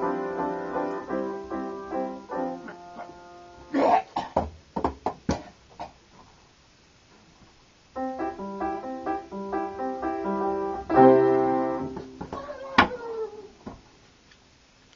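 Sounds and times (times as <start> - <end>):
keyboard notes and chord: 0.0 - 3.7, 8.0 - 12.2.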